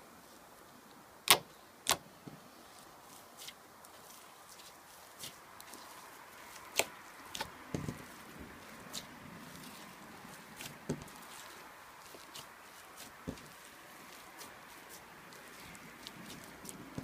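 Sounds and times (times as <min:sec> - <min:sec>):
slime squishing: 0:01.3 - 0:17.0
dull thuds: 0:06.8 - 0:08.5, 0:10.6 - 0:11.4, 0:13.2 - 0:13.6.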